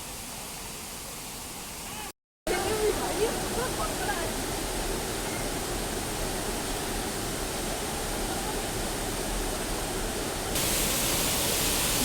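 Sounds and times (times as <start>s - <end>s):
waterfall rushing: 2.5s - 12.0s.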